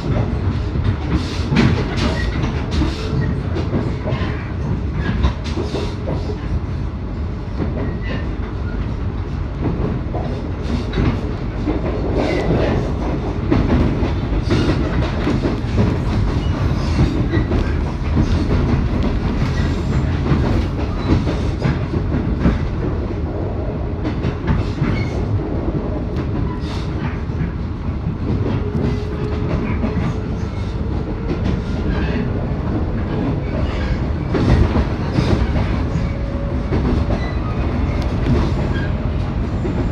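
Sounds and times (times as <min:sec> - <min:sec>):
train rumbling: 0:00.0 - 0:39.9.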